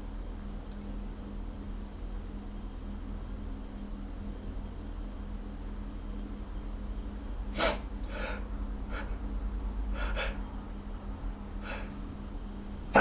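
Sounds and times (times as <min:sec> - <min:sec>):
steady low hum: 0:05.9 - 0:13.0
man's sharp breaths before sneeze: 0:07.6 - 0:09.2, 0:10.0 - 0:10.4, 0:11.6 - 0:12.0.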